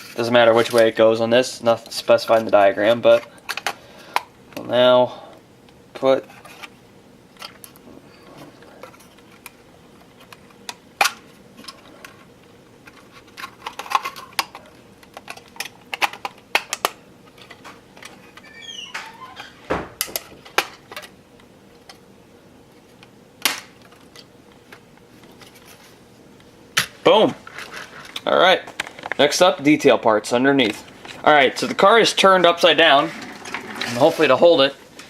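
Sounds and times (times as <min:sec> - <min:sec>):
plastic parts clicking and tapping: 0:12.8 - 0:18.2.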